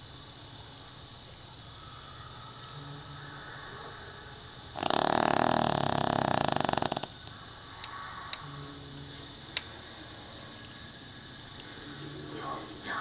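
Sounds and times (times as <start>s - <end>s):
dog snoring: 4.7s - 7.2s.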